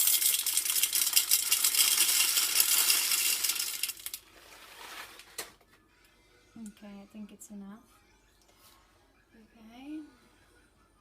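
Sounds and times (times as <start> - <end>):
popcorn kernels rattling into metal pot: 0.0 - 5.3.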